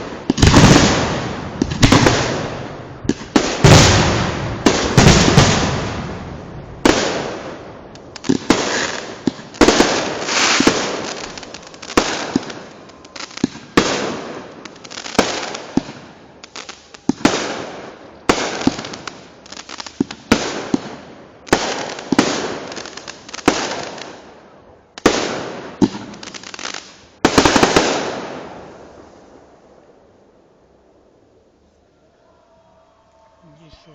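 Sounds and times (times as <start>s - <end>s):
fireworks bursting bangs: 0.0s - 29.9s
fireworks crackling: 0.0s - 31.0s.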